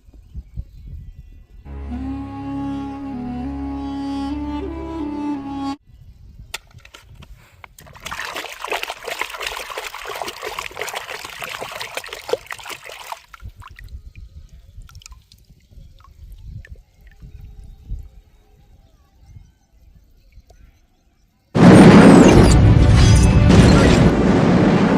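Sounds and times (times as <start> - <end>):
water dripping: 7.8 - 18.0
water pouring and splashing: 7.8 - 18.2.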